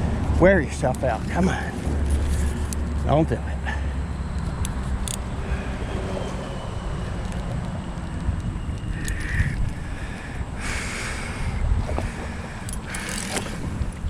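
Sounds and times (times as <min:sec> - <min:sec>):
wind buffeting microphone: 0:04.1 - 0:14.0
sharp clicks: 0:07.2 - 0:09.8, 0:12.6 - 0:13.6.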